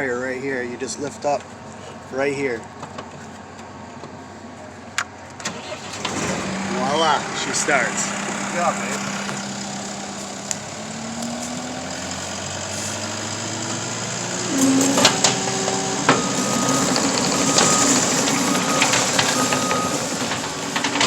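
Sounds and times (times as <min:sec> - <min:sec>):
skid steer engine running: 0:05.4 - 0:21.0
backup alarm beeping: 0:13.4 - 0:21.0.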